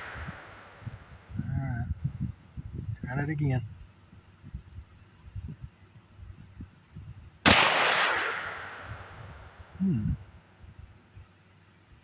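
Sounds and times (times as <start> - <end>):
pistol shot echoing: 0.0 - 0.9, 7.5 - 9.8.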